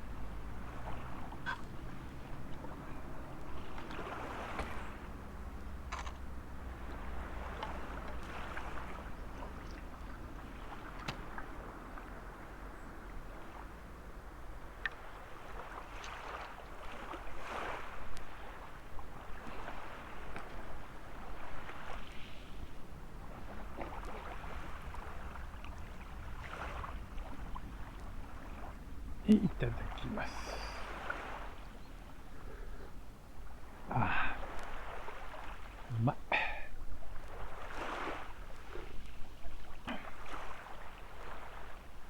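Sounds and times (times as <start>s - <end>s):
small waves washing on sand: 0.0s - 42.0s
light clicks: 5.9s - 6.2s.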